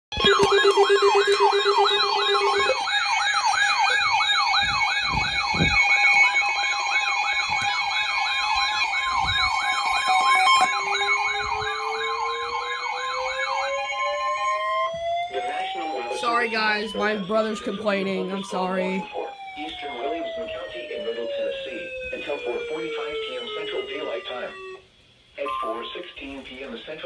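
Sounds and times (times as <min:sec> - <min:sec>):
steady alert tones: 0:00.1 - 0:20.0, 0:25.4 - 0:26.2
siren slow rising wind-up: 0:00.1 - 0:24.8
electronic siren yelp: 0:00.1 - 0:26.2.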